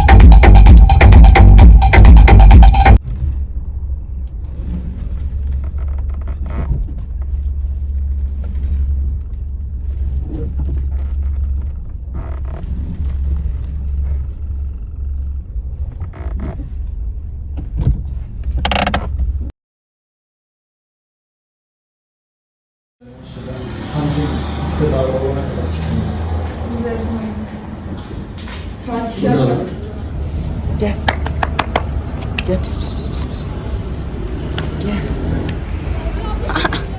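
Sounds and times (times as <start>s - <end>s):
music: 0.0s - 3.0s
car rumbling: 0.0s - 19.5s, 29.7s - 36.9s.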